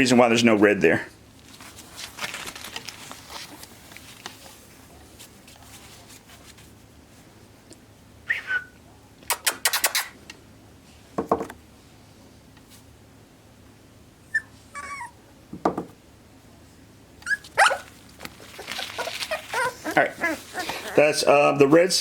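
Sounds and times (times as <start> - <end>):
puppy whimpering: 14.3 - 15.2, 17.2 - 21.4.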